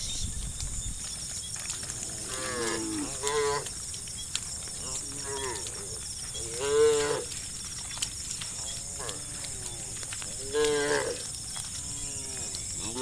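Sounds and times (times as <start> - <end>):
cattle mooing: 2.0 - 3.7, 4.8 - 7.4, 8.6 - 11.3, 11.9 - 13.0.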